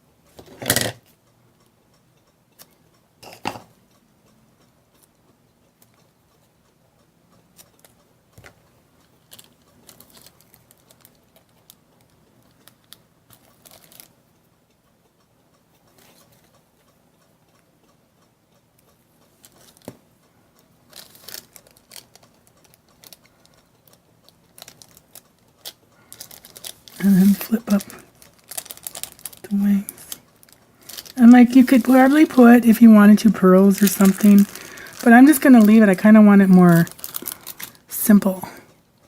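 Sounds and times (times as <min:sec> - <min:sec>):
paper rustling: 0:30.9 - 0:36.0.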